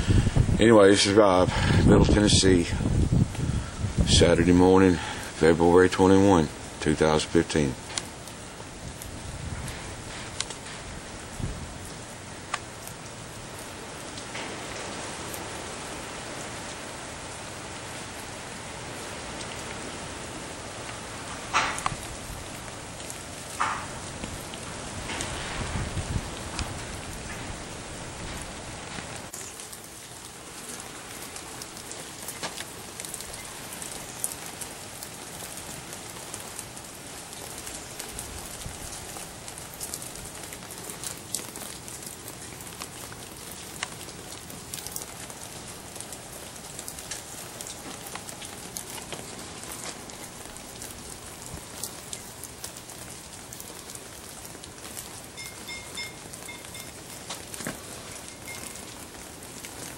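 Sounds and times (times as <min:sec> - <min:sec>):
rain pattering and dripping: 0:00.0 - 0:59.9
sharp drip ticks: 0:10.4 - 0:10.6, 0:12.5 - 0:14.5, 0:29.3 - 0:59.9
faint high beeps: 0:55.4 - 0:57.2, 0:58.1 - 0:58.9.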